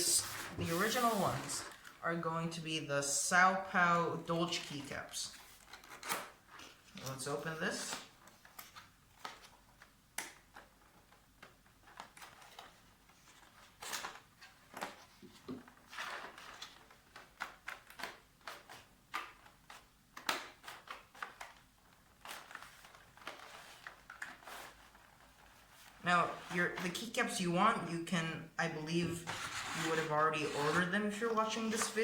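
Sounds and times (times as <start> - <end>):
packaging rustling and clicks: 5.4 - 26.0.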